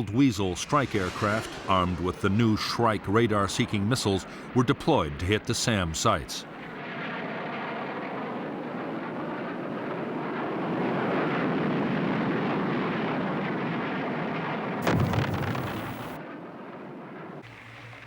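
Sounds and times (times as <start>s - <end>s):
sharp blast: 0.0s - 4.6s, 14.8s - 16.2s.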